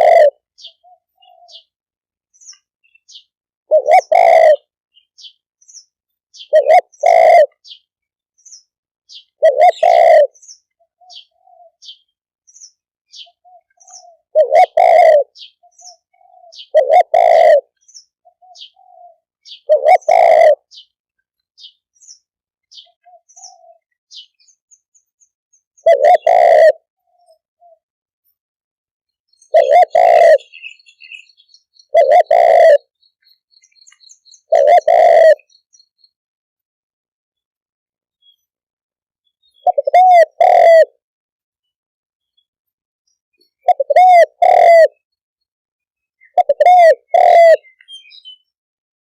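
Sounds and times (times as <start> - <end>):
dove cooing: 0.0 - 1.8, 3.1 - 5.3, 6.4 - 7.8, 9.1 - 12.0, 13.1 - 20.9, 22.7 - 24.3, 25.8 - 27.8, 29.4 - 33.0, 33.8 - 35.6, 39.6 - 41.0, 43.5 - 45.0, 46.2 - 48.4
small birds chirping: 0.0 - 28.4, 29.1 - 36.2, 38.1 - 38.6, 39.2 - 41.0, 41.6 - 45.2, 45.9 - 48.6.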